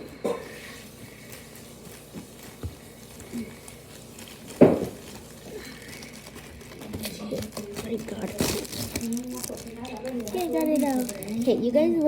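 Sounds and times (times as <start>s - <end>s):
cardboard package rustling: 1.4s - 12.0s
thump on package: 4.5s - 5.1s.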